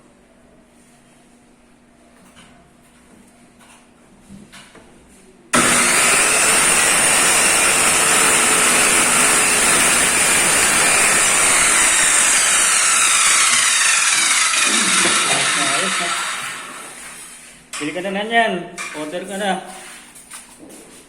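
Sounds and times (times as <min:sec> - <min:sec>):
circular saw whining: 0:05.6 - 0:17.1.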